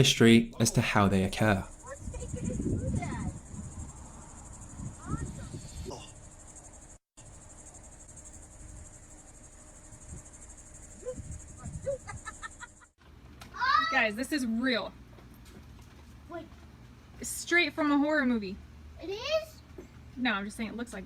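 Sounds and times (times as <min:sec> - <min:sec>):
crickets trilling: 0:00.7 - 0:12.9.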